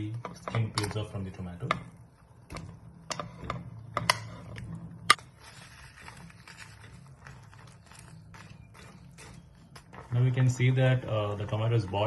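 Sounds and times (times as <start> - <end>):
steady low hum: 0.0 - 12.0
faint crackly patter: 5.3 - 12.0.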